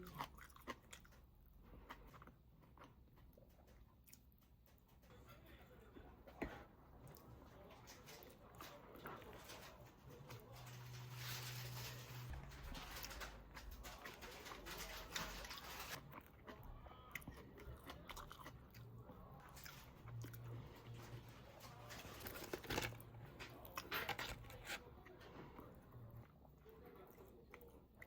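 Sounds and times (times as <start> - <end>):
person chewing crunchy food: 0.0 - 4.6, 15.4 - 21.2.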